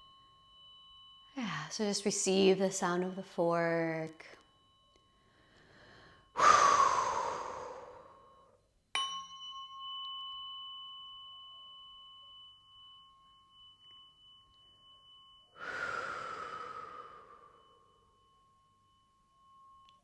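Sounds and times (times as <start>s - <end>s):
tuning fork ringing: 0.0s - 20.0s
breathy rush of air: 5.8s - 8.3s, 15.6s - 17.8s.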